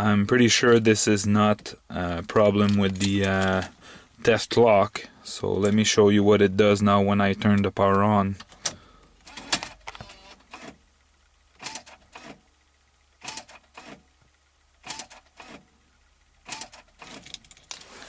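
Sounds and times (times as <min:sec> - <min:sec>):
radio motor whirring and clicking: 0:08.6 - 0:10.8, 0:11.5 - 0:12.4, 0:13.2 - 0:14.0, 0:14.8 - 0:15.7, 0:16.4 - 0:17.4.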